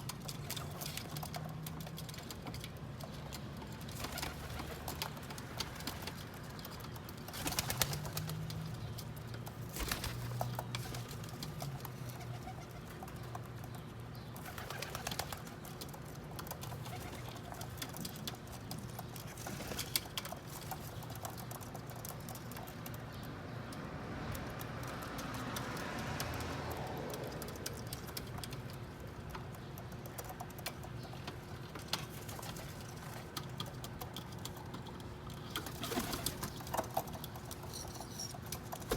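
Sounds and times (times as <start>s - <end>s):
pigeons cooing: 9.8s - 13.3s, 14.3s - 15.6s, 16.6s - 18.0s.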